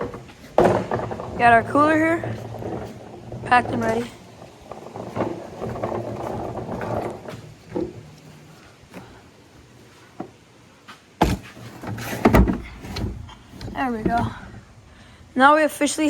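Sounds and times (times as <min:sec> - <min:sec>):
small knocks: 0:00.0 - 0:09.2
rustling and scraping: 0:00.0 - 0:14.8.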